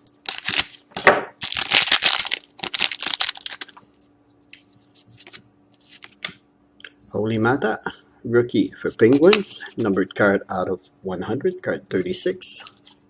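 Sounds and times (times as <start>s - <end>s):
wrapper crinkling and crackling: 0.2s - 0.8s, 1.4s - 3.8s.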